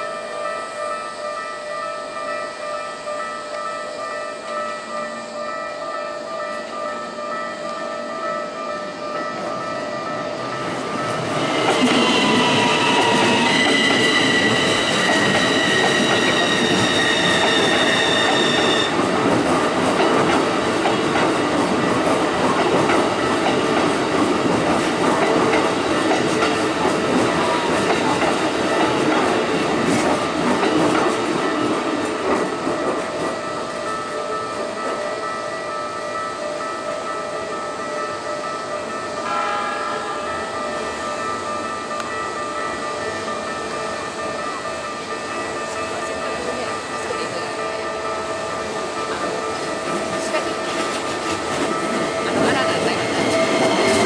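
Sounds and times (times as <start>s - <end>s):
train rumbling over rails: 0.0s - 54.0s
train wheels squealing: 11.0s - 19.0s, 49.6s - 54.0s.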